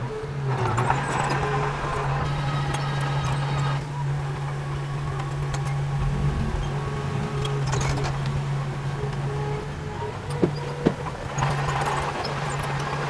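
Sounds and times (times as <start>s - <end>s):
diesel engine running steadily: 0.0s - 13.0s.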